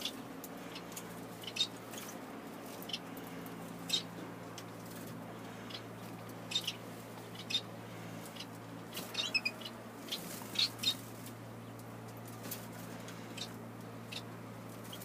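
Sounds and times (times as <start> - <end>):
finches chirping: 0.0 - 2.1, 3.8 - 4.1, 5.6 - 11.1, 13.3 - 15.0
steady low hum: 0.0 - 15.0.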